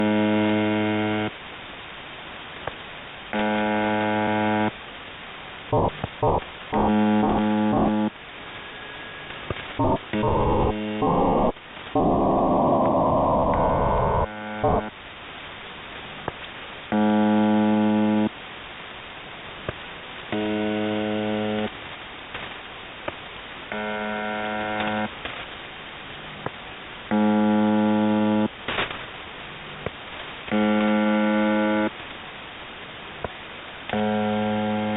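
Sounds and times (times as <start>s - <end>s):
harsh buzz tone: 0.0s - 1.3s, 3.3s - 4.8s, 5.7s - 8.2s, 8.8s - 15.0s, 16.9s - 18.3s, 20.3s - 21.7s, 23.7s - 25.2s, 27.1s - 28.5s, 30.5s - 32.0s, 33.9s - 34.9s
static hiss: 0.0s - 34.9s
rough noise bursts and clicks: 2.6s - 4.8s, 5.7s - 8.6s, 9.2s - 15.0s, 19.6s - 25.7s, 26.4s - 32.2s, 33.2s - 34.9s.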